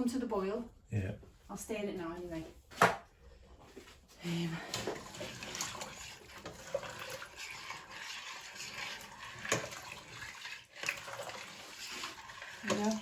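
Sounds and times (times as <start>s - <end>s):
soup swishing and slopping: 4.8s - 13.0s.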